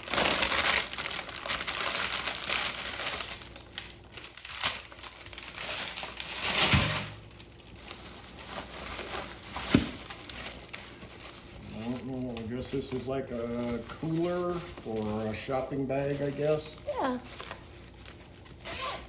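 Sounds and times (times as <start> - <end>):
plastic packaging crinkling: 0.0 - 19.0.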